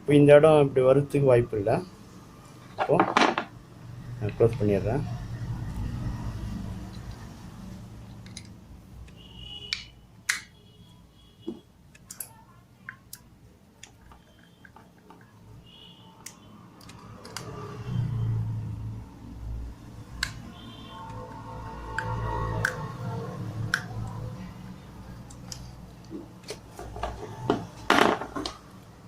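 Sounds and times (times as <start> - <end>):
small parts clicking and tapping: 8.0 - 10.6, 11.5 - 15.4, 16.2 - 17.6.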